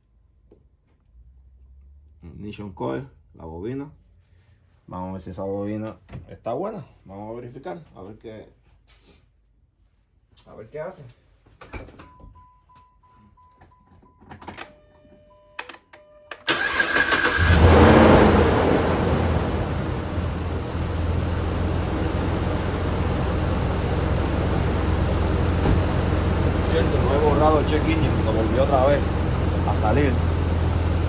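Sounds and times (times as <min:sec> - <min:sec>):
car engine starting and idling: 0:16.4 - 0:31.0.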